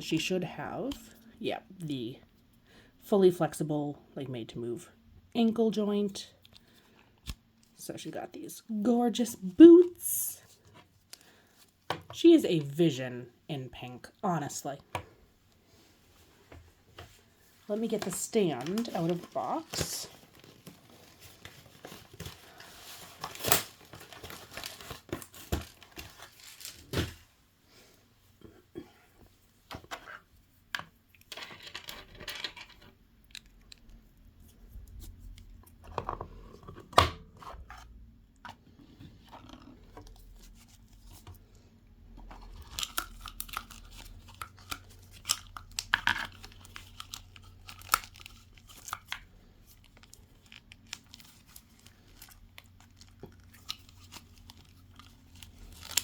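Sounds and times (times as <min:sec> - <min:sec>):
packaging rustling and crinkling: 0:17.0 - 0:27.3, 0:42.2 - 0:56.0.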